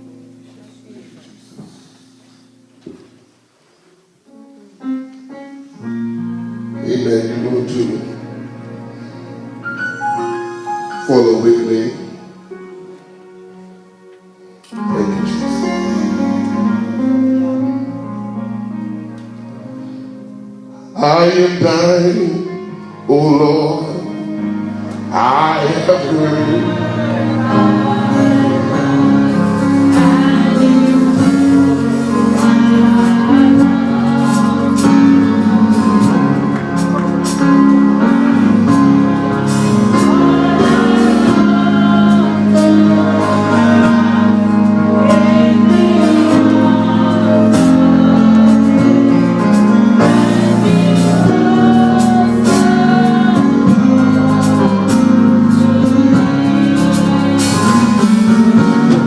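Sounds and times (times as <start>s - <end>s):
gospel singing: 0.0s - 59.0s
held chords: 4.2s - 59.0s.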